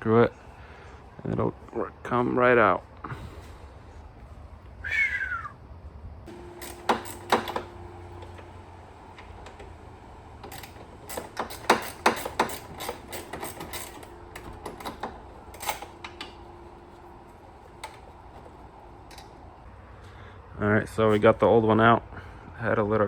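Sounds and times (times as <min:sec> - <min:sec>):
tools and car parts clattering: 0:06.3 - 0:19.6.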